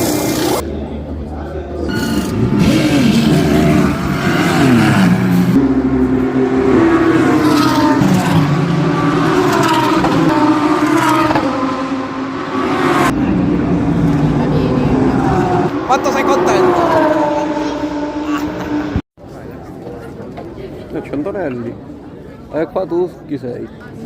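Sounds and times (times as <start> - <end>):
racing car engines revving: 0.0 - 19.0.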